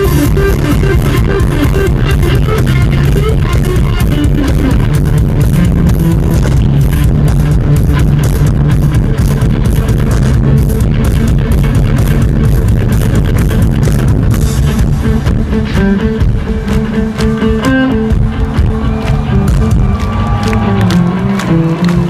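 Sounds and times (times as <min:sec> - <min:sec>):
electric guitar notes ringing: 0:00.0 - 0:09.6, 0:14.4 - 0:22.0
drum beat: 0:00.0 - 0:22.0
heavy bass guitar: 0:00.0 - 0:22.0
rock band playing live: 0:00.0 - 0:22.0.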